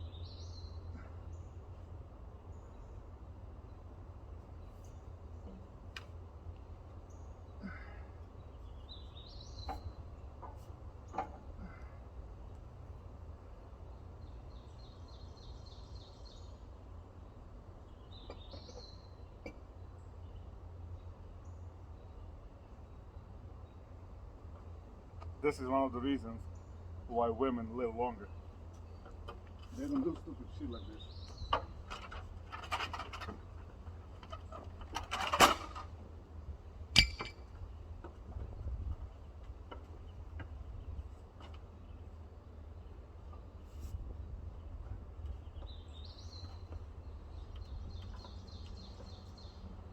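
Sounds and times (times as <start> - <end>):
songbird singing: 0.0 - 49.9
scraping rattle: 31.6 - 36.0
sharp metal clank: 37.0 - 37.4.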